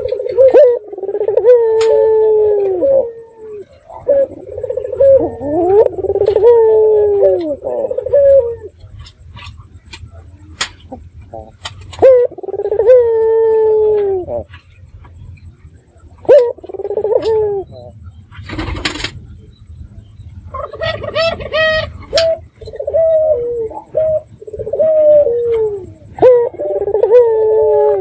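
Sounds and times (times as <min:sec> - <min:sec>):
dove cooing: 0:00.0 - 0:28.0.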